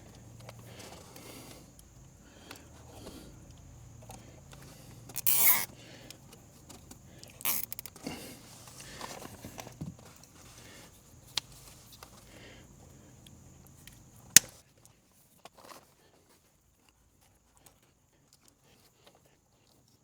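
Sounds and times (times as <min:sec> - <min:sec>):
small clicks: 0:05.1 - 0:06.2, 0:07.4 - 0:08.0
loud rasping burst: 0:05.2 - 0:05.7.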